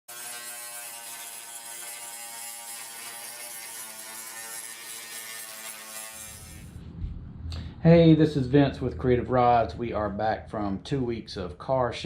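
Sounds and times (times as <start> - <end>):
small electric motor buzzing: 0.1 - 6.8.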